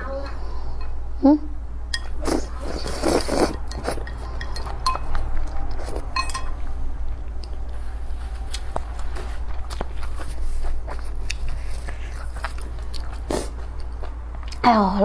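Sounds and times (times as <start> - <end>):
low hum: 0.0 - 15.0
chewing noodles: 2.2 - 14.6
utensils clinking on a dish: 3.4 - 5.2, 5.8 - 6.6.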